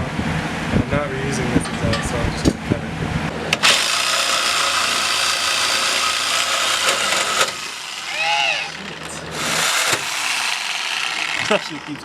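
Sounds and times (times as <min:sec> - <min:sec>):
reciprocating saw cutting pipe: 0:03.6 - 0:12.0.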